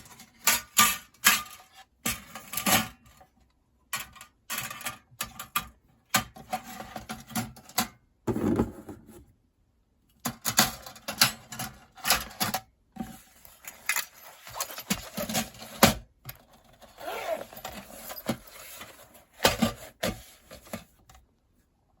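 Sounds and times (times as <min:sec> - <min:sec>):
metal parts clinking and scraping: 0:13.2 - 0:15.8, 0:16.4 - 0:19.6.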